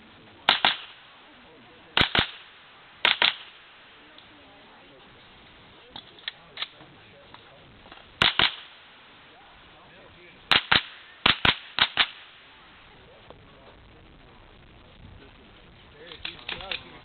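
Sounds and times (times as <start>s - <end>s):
rifle shots: 0.5s - 1.1s, 2.0s - 3.7s, 8.2s - 8.8s, 10.5s - 12.4s.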